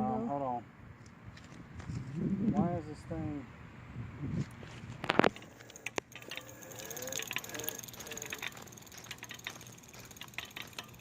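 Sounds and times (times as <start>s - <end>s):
bike gearbox clicking: 5.1s - 11.0s.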